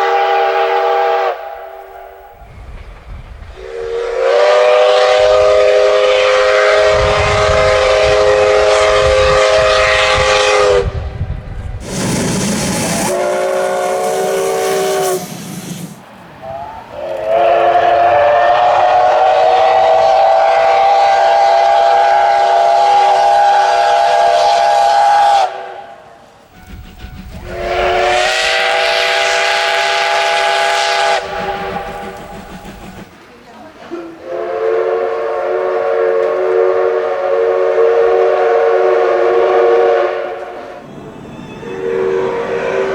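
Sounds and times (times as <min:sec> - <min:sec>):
steam locomotive whistle: 0:00.0 - 0:02.4, 0:03.5 - 0:33.1, 0:34.2 - 0:42.9
steam hissing: 0:11.8 - 0:16.6, 0:26.4 - 0:42.9.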